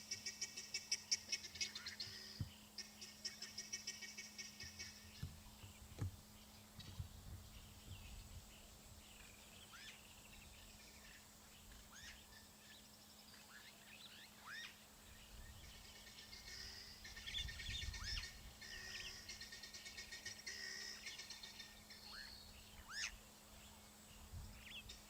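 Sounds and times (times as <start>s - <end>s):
guineafowl rattling alarm calls: 0.0s - 5.2s
faint bird chirps: 0.0s - 25.0s.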